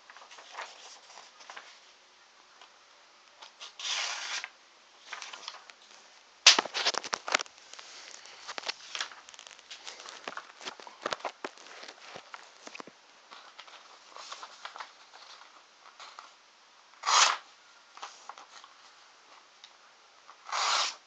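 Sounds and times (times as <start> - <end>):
paper crinkling: 0.1 - 1.8, 3.4 - 16.4
knife slicing paper: 3.6 - 4.5, 17.0 - 17.4, 20.4 - 21.0
sharp crack: 6.4 - 7.8.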